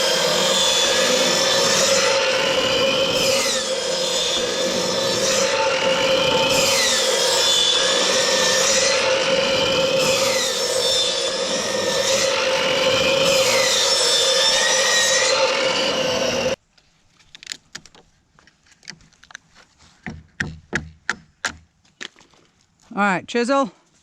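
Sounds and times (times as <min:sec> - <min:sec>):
power saw cutting wood: 0:00.0 - 0:16.6
sharp knocks on wood: 0:20.0 - 0:21.7.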